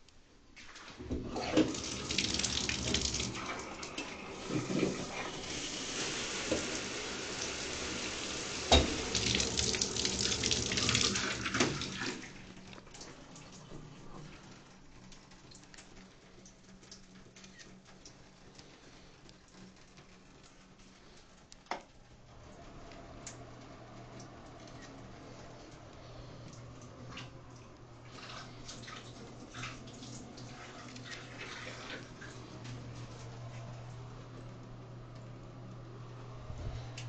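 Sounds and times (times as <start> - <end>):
faucet running into sink: 1.1 - 12.4, 28.1 - 32.6.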